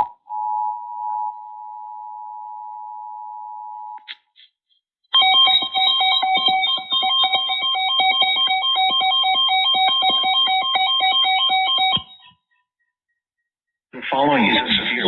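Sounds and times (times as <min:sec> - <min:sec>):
multi-pitch alarm tone: 0:05.1 - 0:12.4.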